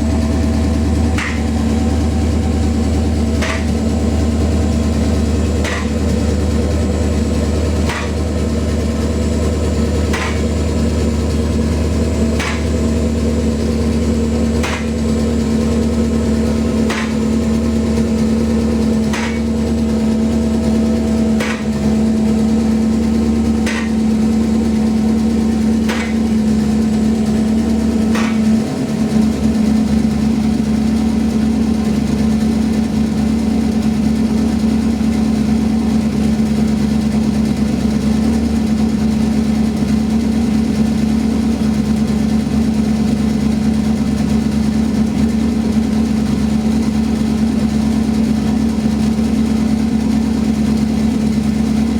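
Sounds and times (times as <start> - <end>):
car engine running: 0.0 - 51.9.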